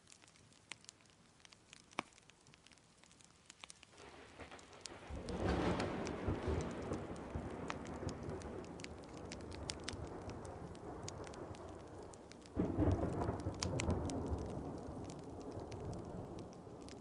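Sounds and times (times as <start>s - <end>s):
steady rain: 0.0s - 17.0s
wood fire crackling and popping: 0.0s - 17.0s
thunder rumbling: 4.0s - 17.0s.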